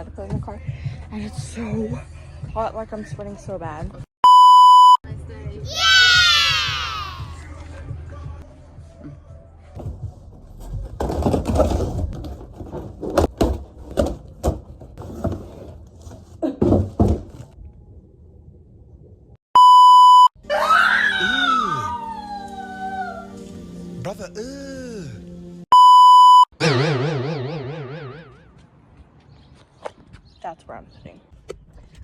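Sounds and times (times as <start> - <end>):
electronic beep: 4.2 - 5.0, 19.6 - 20.3, 25.7 - 28.4
knocks and rustling: 9.8 - 17.6
swooping electronic tones: 26.6 - 28.6.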